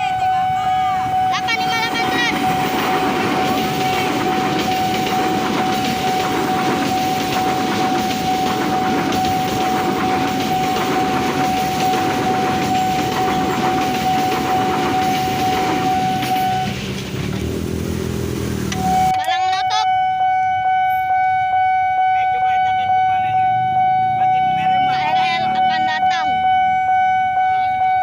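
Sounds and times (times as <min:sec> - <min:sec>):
steady high tone: 0:00.0 - 0:16.8, 0:18.7 - 0:28.0
train wheels clattering over rails: 0:01.4 - 0:18.8.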